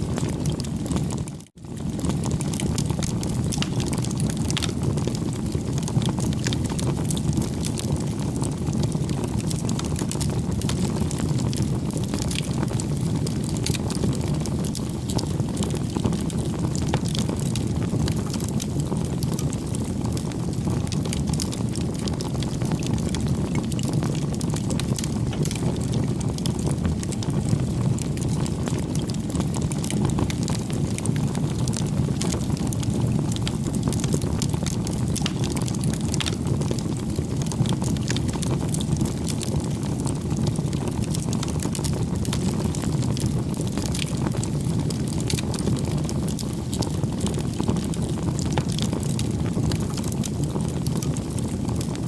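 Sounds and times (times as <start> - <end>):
wood fire crackling: 0.0 - 52.0.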